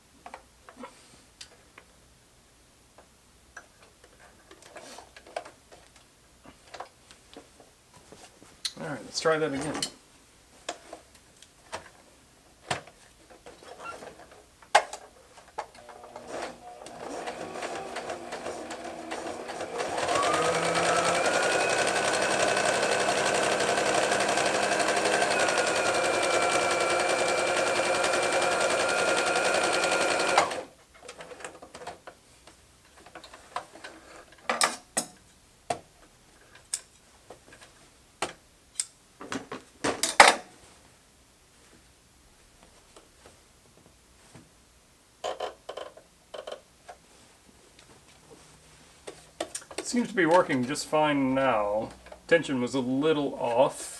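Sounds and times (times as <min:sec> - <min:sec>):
sewing machine whirring: 0:15.7 - 0:30.7.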